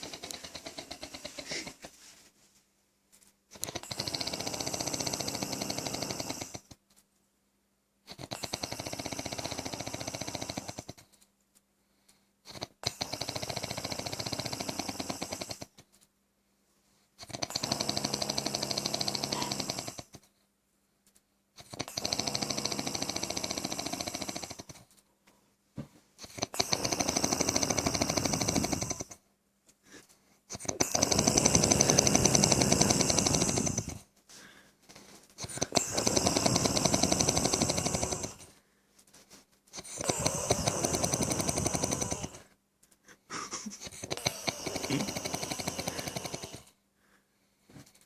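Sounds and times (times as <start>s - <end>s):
loud rattling snoring: 0.0s - 1.8s, 3.5s - 6.8s, 8.1s - 11.2s, 12.5s - 15.8s, 17.2s - 20.3s, 21.6s - 25.0s, 26.2s - 29.2s, 30.5s - 34.2s, 35.4s - 38.6s, 39.7s - 42.6s, 43.4s - 46.8s.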